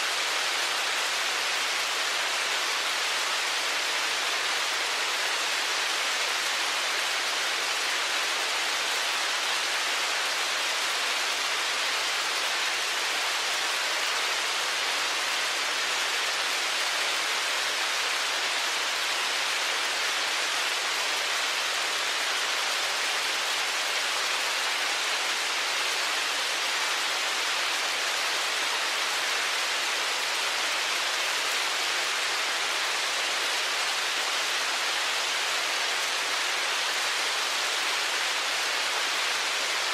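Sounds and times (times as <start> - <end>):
heavy rain hiss: 0.0 - 39.9.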